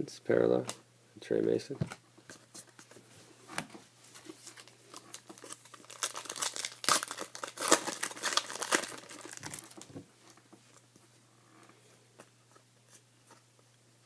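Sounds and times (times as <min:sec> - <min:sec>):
wrapper crinkling and tearing: 0:04.4 - 0:09.9.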